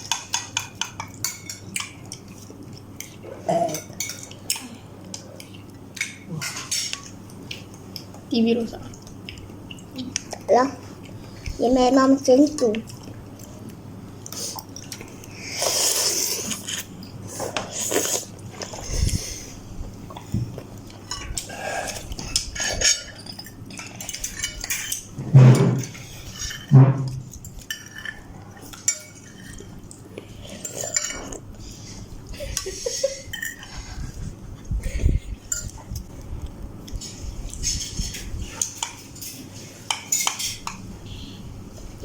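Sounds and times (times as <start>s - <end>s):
cutlery clinking against bowl: 0.0s - 2.4s, 3.0s - 8.1s, 21.0s - 31.4s, 33.2s - 34.0s, 35.4s - 35.8s, 37.8s - 40.8s.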